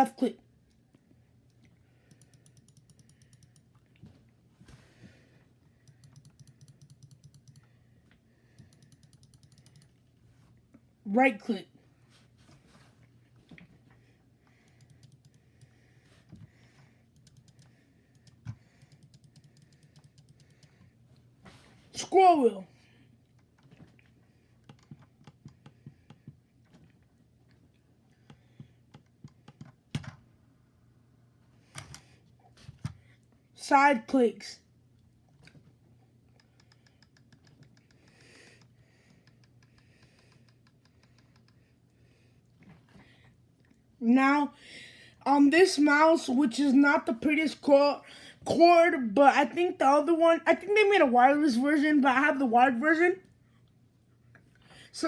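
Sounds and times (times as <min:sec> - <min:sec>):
mouse buttons clicking: 0:02.1 - 0:03.7, 0:05.9 - 0:07.6, 0:08.6 - 0:09.9.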